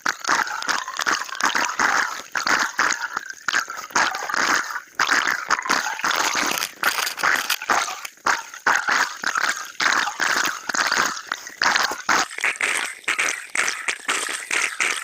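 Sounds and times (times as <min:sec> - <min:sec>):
diver's exhaled bubbles gurgling: 0:00.0 - 0:15.0
dense crackle of clicks: 0:05.1 - 0:08.2.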